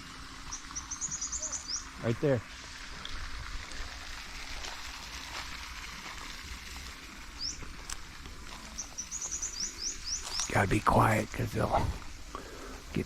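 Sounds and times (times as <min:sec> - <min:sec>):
outdoor ambient hiss: 0:00.0 - 0:13.0
bird chirping: 0:00.5 - 0:02.1, 0:07.4 - 0:07.7, 0:08.7 - 0:10.8.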